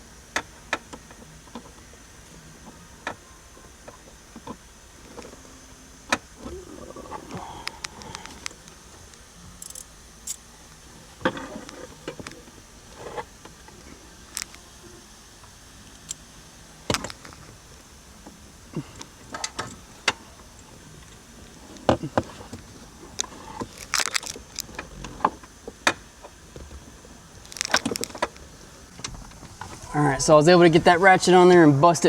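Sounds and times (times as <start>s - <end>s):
ratchet clicking on a bolt: 9.6s - 10.4s.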